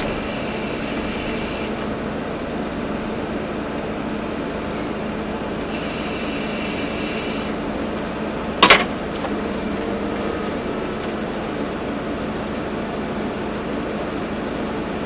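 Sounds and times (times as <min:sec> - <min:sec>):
hydraulic whine: 0:00.0 - 0:12.4
excavator diesel engine running: 0:00.0 - 0:15.0
loud metallic clank: 0:08.6 - 0:09.0.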